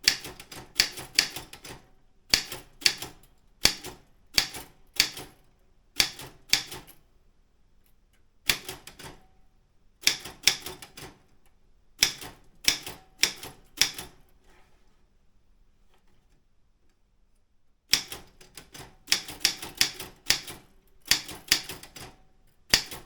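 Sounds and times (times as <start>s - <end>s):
typewriter keystrokes clacking: 0.0s - 5.3s, 12.0s - 14.1s, 17.9s - 23.0s.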